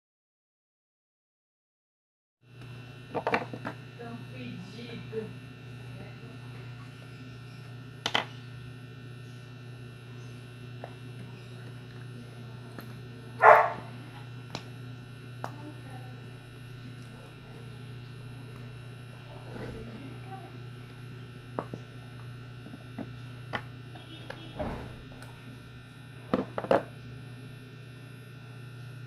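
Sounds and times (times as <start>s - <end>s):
electrical hum: 2.4s - 29.0s
dog barking: 13.4s - 13.9s.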